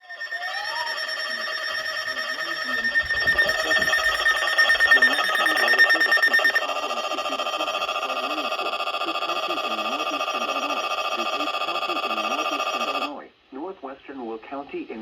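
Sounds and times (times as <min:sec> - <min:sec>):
emergency alert alarm tones: 0:00.0 - 0:11.3.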